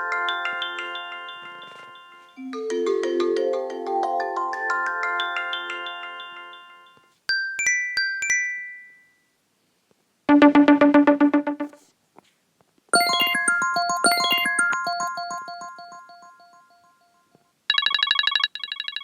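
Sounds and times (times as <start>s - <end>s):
marimba-like ringtone: 0.0s - 6.5s, 13.0s - 18.1s
quick melodic ringtone: 10.3s - 11.8s, 13.0s - 17.2s
bright chime alert tone: 13.0s - 16.9s.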